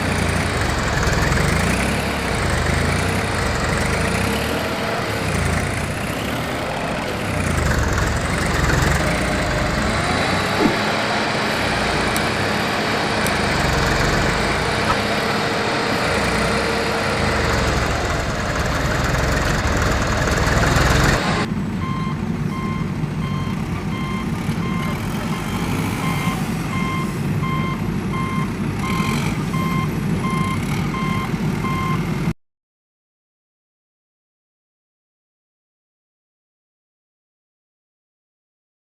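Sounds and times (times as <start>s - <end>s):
heavy vehicle engine running: 0.0s - 32.3s
reversing alarm beeping: 21.4s - 32.0s.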